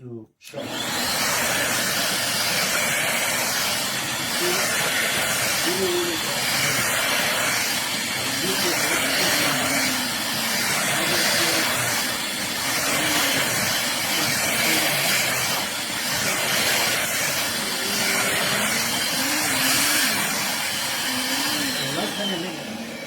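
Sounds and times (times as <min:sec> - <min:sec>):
vacuum cleaner running: 0:00.5 - 0:23.0.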